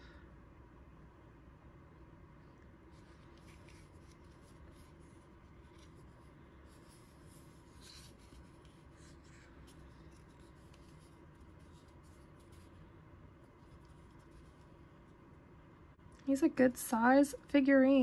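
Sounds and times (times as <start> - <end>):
low room hum: 0.0 - 18.0
plastic toy being handled: 2.9 - 12.8.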